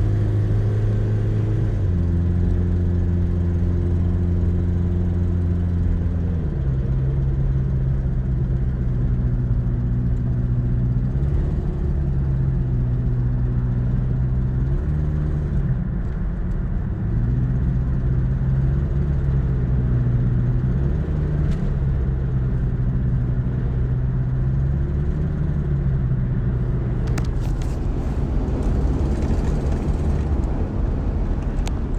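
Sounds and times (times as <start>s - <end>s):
car engine revving under load: 16.5s - 31.9s
engine knocking noise: 27.1s - 31.9s.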